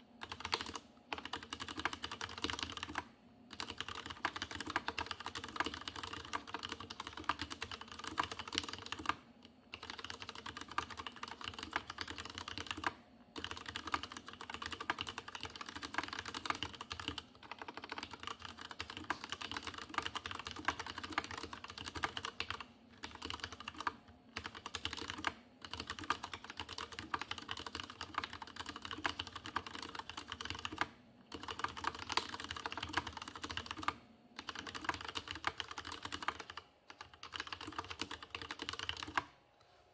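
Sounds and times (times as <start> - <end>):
mechanical keyboard typing: 0.2 - 39.3.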